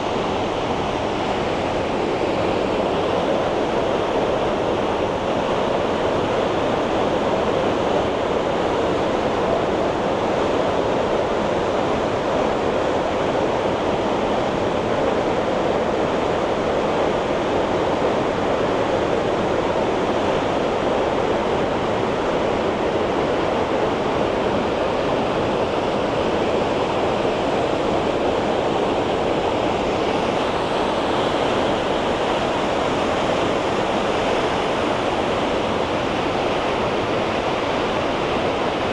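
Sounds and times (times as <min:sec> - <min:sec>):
rushing water: 0:00.0 - 0:38.9.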